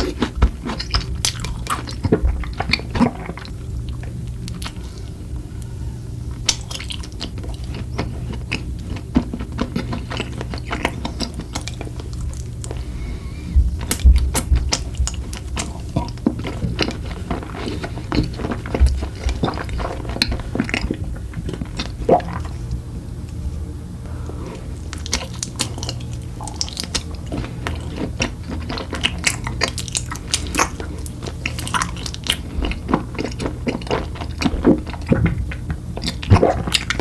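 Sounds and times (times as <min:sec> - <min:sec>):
chewing with wet mouth clicks: 0:00.0 - 0:04.8, 0:06.4 - 0:12.8, 0:13.8 - 0:22.6, 0:24.8 - 0:37.0
low thumps: 0:13.4 - 0:15.2.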